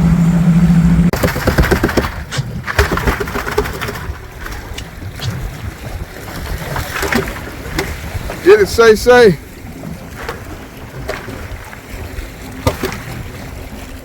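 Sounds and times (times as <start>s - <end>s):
boat engine humming: 0.0s - 14.0s
wind on microphone: 3.7s - 8.5s.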